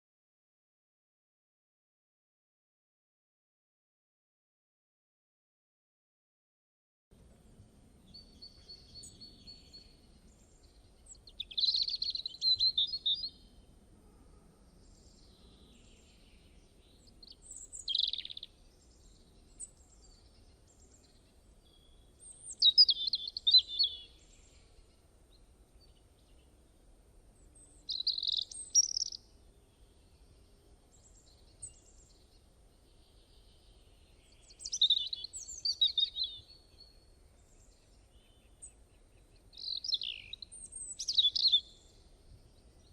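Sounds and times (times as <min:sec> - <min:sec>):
songbird singing warbled phrases: 0:08.1 - 0:13.5, 0:14.9 - 0:26.6, 0:27.6 - 0:30.2, 0:30.9 - 0:42.9.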